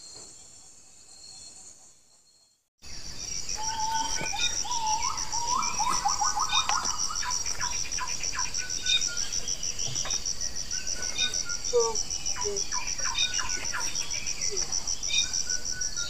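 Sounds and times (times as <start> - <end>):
insect trill: 0.0 - 16.0
forest birds chattering: 2.8 - 16.0.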